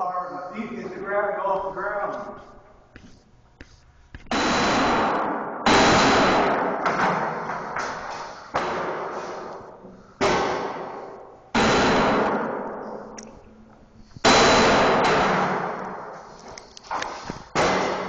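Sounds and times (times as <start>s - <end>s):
sledgehammer smashing into desk: 4.3s - 7.4s, 14.2s - 15.8s.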